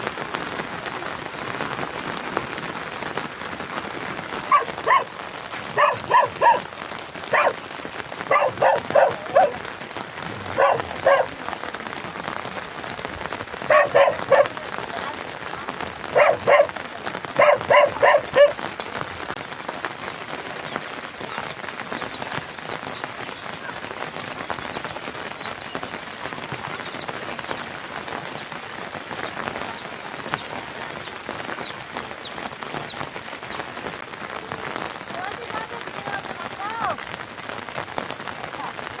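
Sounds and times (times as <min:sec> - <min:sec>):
steady rain: 0:00.0 - 0:39.0
dog barking: 0:04.5 - 0:11.4, 0:13.6 - 0:14.7, 0:16.0 - 0:18.7.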